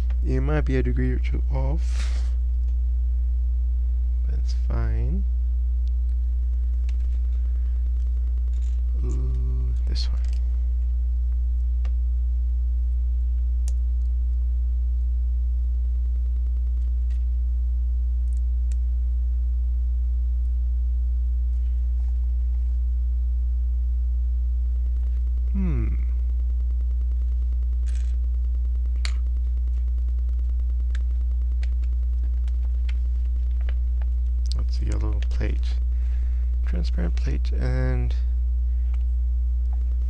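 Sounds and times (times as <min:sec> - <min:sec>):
electrical mains hum: 0:00.0 - 0:40.0
short falling murmur: 0:25.5 - 0:26.3.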